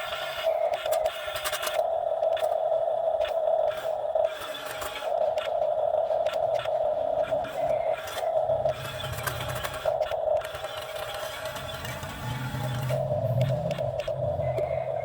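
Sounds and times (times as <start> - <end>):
excavator hydraulic whine: 7.2 - 15.0.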